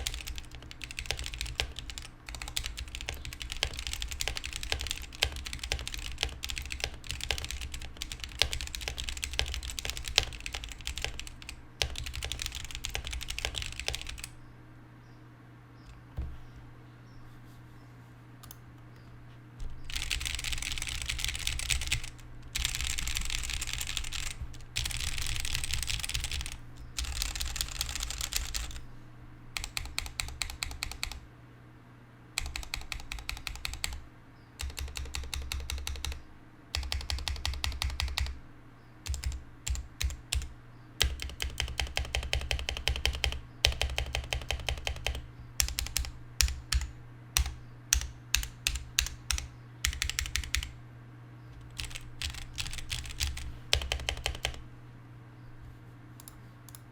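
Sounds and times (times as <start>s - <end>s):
fast keyboard typing: 0.0s - 14.4s, 19.9s - 28.8s, 29.5s - 31.2s, 32.4s - 34.0s, 34.6s - 38.4s, 39.0s - 50.8s, 51.6s - 54.7s
repeated key presses: 0.0s - 14.4s, 18.4s - 28.8s, 29.5s - 31.2s, 32.4s - 38.4s, 39.0s - 50.8s, 51.5s - 54.7s, 56.2s - 56.9s.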